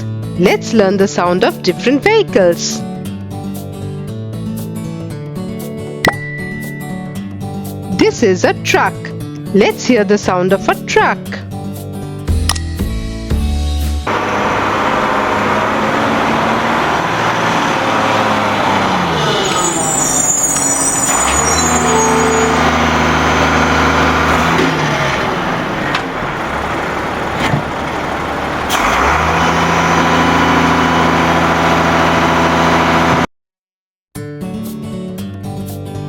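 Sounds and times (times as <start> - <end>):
truck engines running: 14.0 - 33.3.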